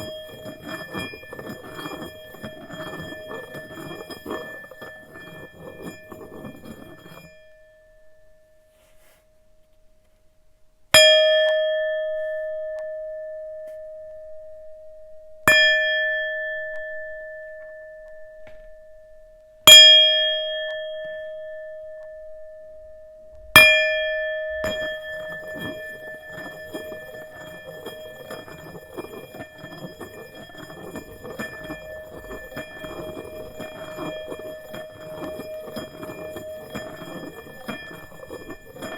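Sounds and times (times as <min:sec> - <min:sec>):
faint rubbing noise: 0:00.0 - 0:07.3, 0:08.7 - 0:09.3, 0:24.7 - 0:38.9
singing bowl strikes ringing: 0:19.7 - 0:38.9.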